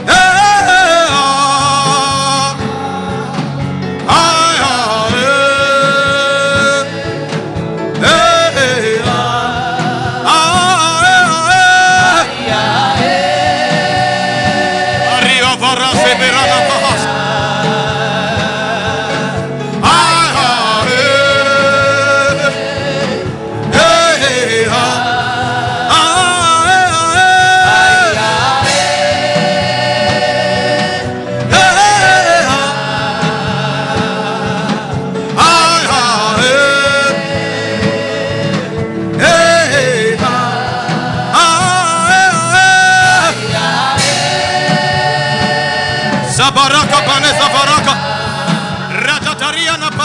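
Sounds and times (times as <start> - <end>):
backing music: 0.0 - 50.0
person singing gospel song: 0.0 - 50.0.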